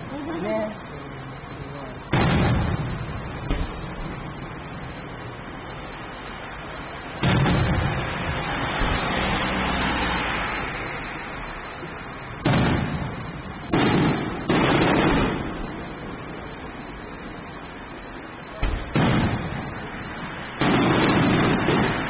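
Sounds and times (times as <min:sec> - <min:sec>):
fireworks shells bursting: 0:11.8 - 0:16.5, 0:18.6 - 0:22.0.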